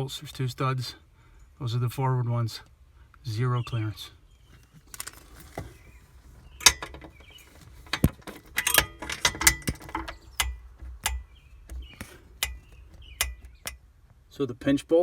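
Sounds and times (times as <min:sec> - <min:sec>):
metal tools clicking and clinking: 0:06.6 - 0:13.8.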